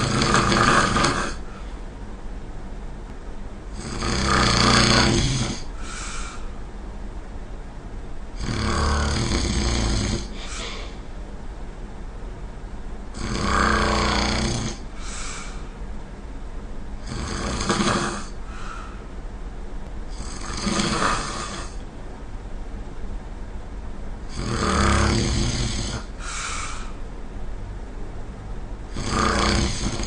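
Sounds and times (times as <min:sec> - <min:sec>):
person snoring heavily: 0:00.0 - 0:01.6, 0:03.8 - 0:06.5, 0:08.4 - 0:11.0, 0:13.2 - 0:15.8, 0:17.0 - 0:19.0, 0:20.1 - 0:21.8, 0:24.3 - 0:27.0, 0:28.9 - 0:30.0
faint breath sound: 0:05.6 - 0:06.7, 0:10.2 - 0:11.1, 0:14.9 - 0:15.8, 0:18.0 - 0:19.2, 0:25.9 - 0:27.1.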